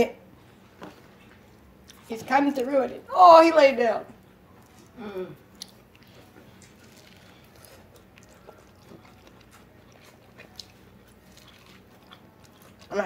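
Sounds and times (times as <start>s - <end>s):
chewing corn on the cob: 4.5s - 13.0s.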